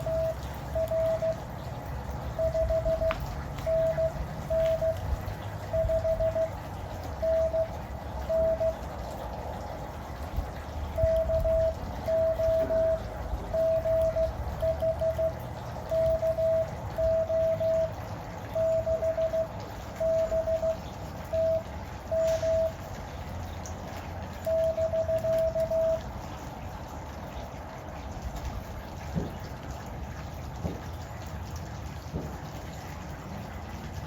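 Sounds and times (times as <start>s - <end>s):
morse code tone: 0.0s - 8.9s, 10.9s - 22.8s, 24.4s - 26.0s
rain: 0.0s - 34.0s.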